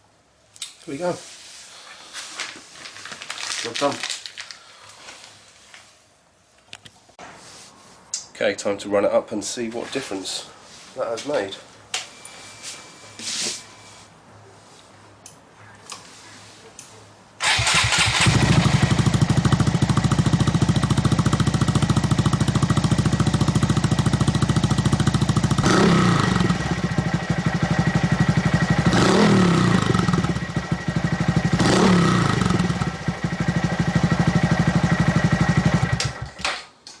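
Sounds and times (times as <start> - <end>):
motorcycle engine idling and revving: 17.4 - 36.4.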